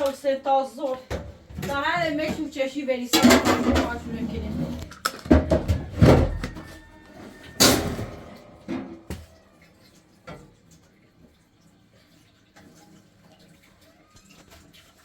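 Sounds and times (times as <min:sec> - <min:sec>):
knocks and clattering thuds: 0:05.3 - 0:09.3.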